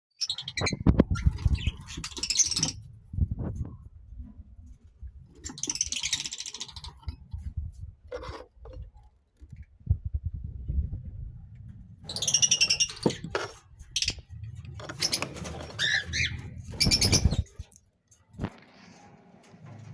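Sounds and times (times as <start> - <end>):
low knocks and thumps: 7.3 - 12.1.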